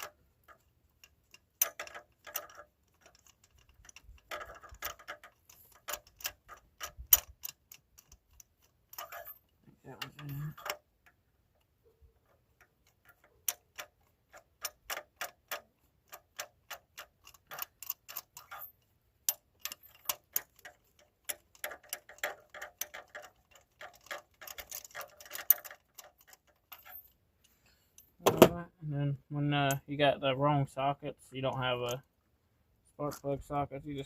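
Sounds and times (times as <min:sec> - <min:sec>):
socket ratchet clicking: 0:00.0 - 0:09.4, 0:10.4 - 0:18.7.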